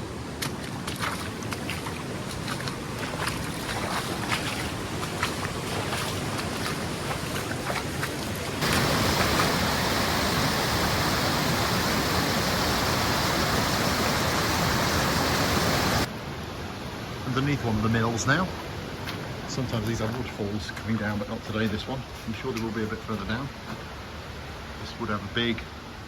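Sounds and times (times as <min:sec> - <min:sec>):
stream rushing: 0:00.0 - 0:20.7.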